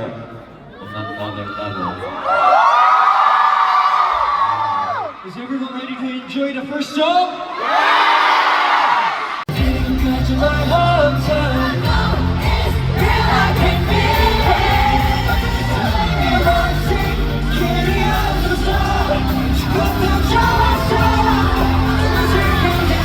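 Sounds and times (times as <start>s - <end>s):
crowd yelling: 0.8s - 6.2s, 7.3s - 9.5s, 11.8s - 23.0s
live pop music with singing: 9.5s - 23.0s.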